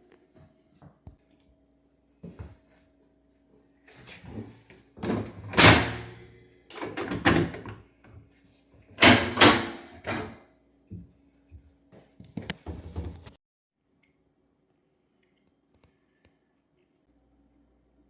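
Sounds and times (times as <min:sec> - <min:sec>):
wooden cabinet doors banging: 0:05.0 - 0:06.2, 0:06.8 - 0:07.8, 0:09.0 - 0:10.4.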